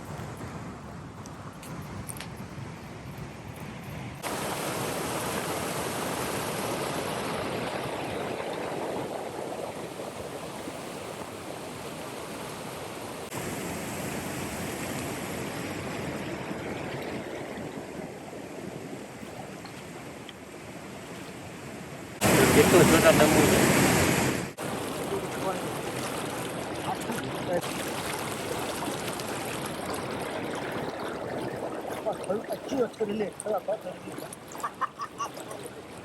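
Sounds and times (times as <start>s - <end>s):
river water rushing: 4.2s - 9.5s, 22.1s - 36.0s.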